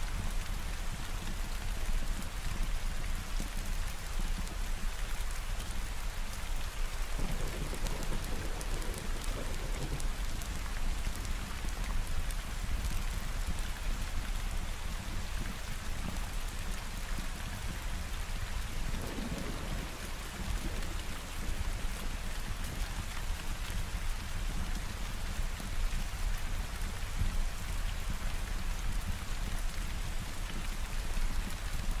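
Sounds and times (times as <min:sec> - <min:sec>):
steady rain falling: 0:00.0 - 0:32.0
thunder rumbling: 0:07.1 - 0:10.6, 0:18.9 - 0:21.6.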